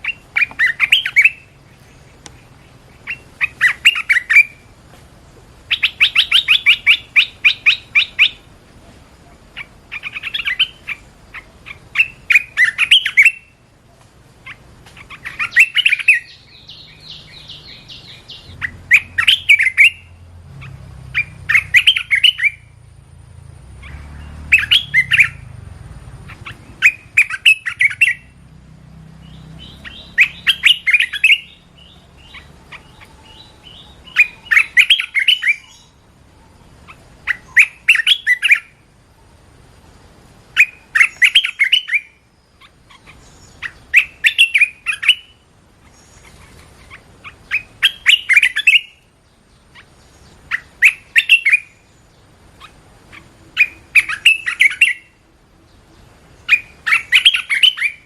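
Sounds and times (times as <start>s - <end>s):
bird singing whistled phrases: 0.0s - 1.5s, 3.0s - 4.6s, 5.7s - 8.5s, 11.7s - 13.6s, 14.5s - 20.2s, 21.2s - 22.7s, 23.8s - 25.4s, 26.4s - 28.3s, 29.3s - 36.0s, 36.9s - 38.7s, 40.6s - 42.2s, 43.0s - 45.4s, 47.2s - 49.0s, 50.5s - 51.9s, 53.6s - 55.2s, 56.5s - 58.0s.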